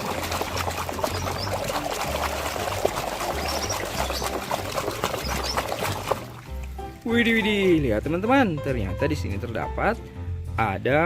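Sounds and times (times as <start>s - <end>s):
water pouring and splashing: 0.0s - 8.6s.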